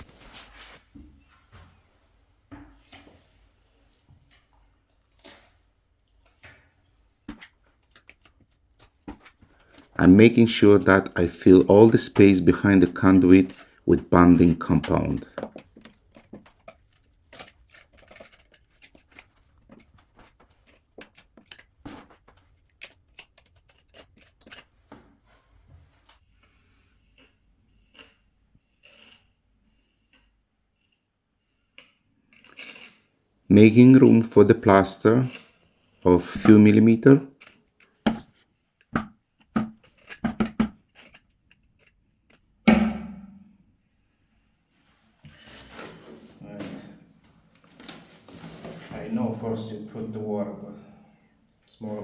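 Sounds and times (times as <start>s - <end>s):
plastering tool scraping and tapping: 5.2s - 10.0s, 11.0s - 13.8s, 14.4s - 31.1s, 37.4s - 42.5s
metal clank with ringing tail: 42.7s - 43.5s.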